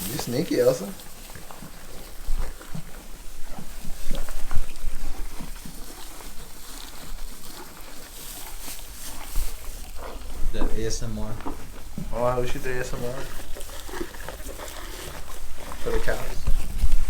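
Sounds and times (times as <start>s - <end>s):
cows chewing and crunching food: 0.0s - 17.0s
wind rumble on microphone: 16.3s - 17.0s.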